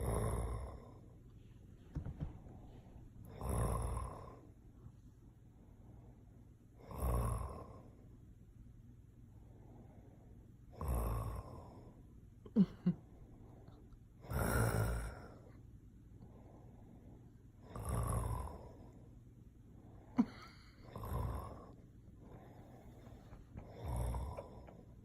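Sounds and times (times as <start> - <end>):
man snoring: 0.0 - 1.0, 3.2 - 4.4, 6.8 - 7.9, 10.8 - 11.9, 14.2 - 15.5, 17.6 - 18.9, 20.2 - 21.8, 23.6 - 24.8.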